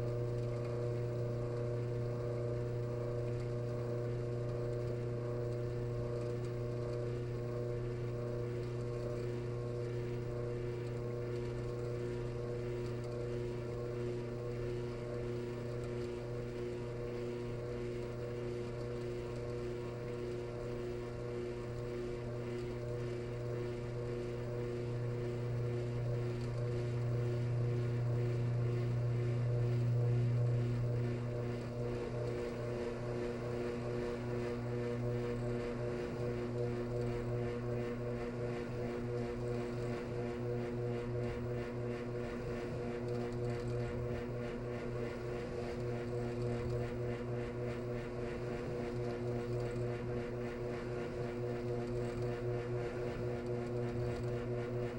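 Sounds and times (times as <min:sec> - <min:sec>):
washing machine drain pump snoring: 0:22.8 - 0:54.9.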